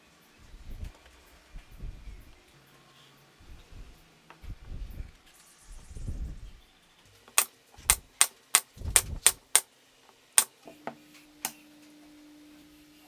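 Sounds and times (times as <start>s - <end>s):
sharp taps: 7.9s - 9.6s.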